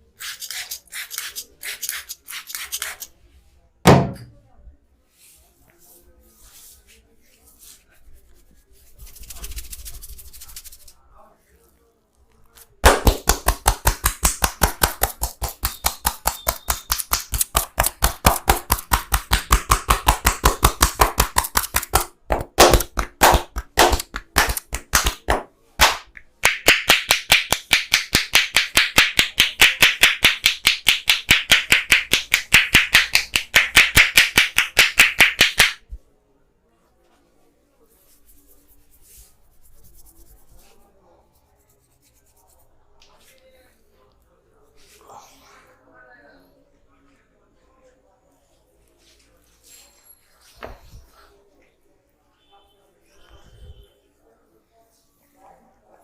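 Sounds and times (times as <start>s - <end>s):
hands slapping in fast rhythm: 9.0s - 10.9s, 12.8s - 35.8s.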